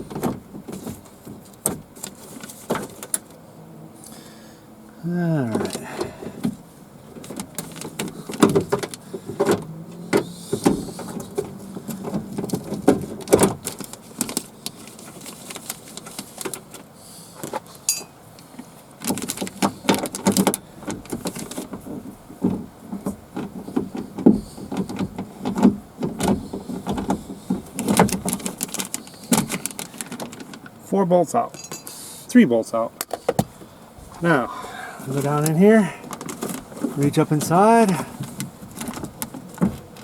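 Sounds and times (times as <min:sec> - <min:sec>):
metal tools clattering: 0:31.5 - 0:32.0.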